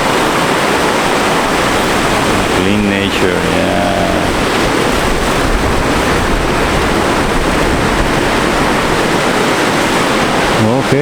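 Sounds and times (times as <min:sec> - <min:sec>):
sea surf rushing: 0:00.0 - 0:11.0
wind buffeting microphone: 0:00.0 - 0:11.0.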